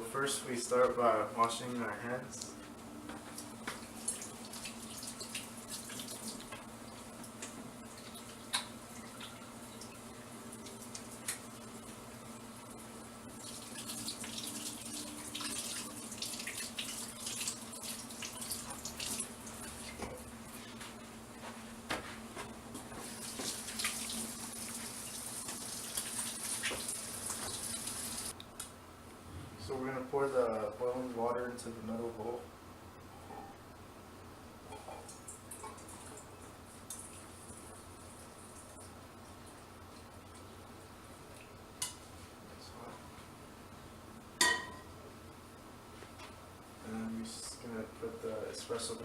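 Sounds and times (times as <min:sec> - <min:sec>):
water splashing and dripping: 0:03.7 - 0:10.0, 0:13.3 - 0:20.2, 0:23.0 - 0:28.3
hands washing under water: 0:03.8 - 0:07.3, 0:22.8 - 0:28.2
tap running into a sink: 0:22.9 - 0:24.2, 0:24.8 - 0:27.9.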